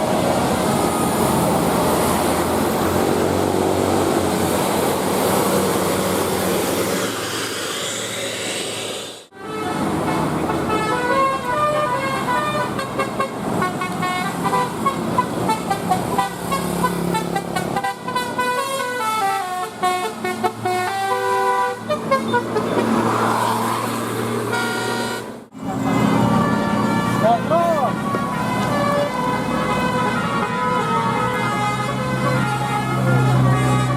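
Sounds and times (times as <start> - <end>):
bus musical horn playing tune: 9.3 - 23.0, 24.4 - 33.9.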